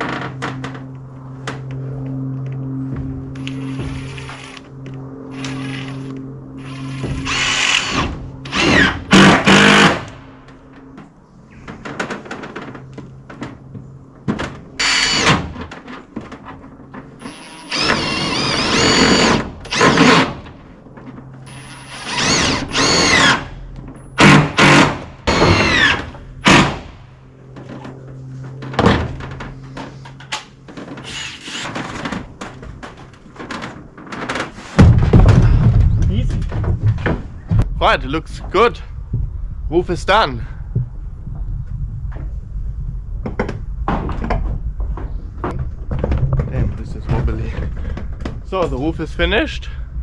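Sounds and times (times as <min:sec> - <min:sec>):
cordless drill driving screws: 0:05.4 - 0:10.2, 0:14.8 - 0:15.4, 0:17.2 - 0:20.4, 0:21.5 - 0:23.5, 0:24.2 - 0:26.6, 0:31.0 - 0:31.8.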